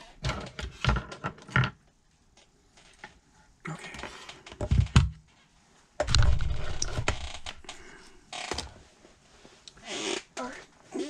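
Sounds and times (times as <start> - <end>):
low rumbling handling noise: 6.0 - 7.8.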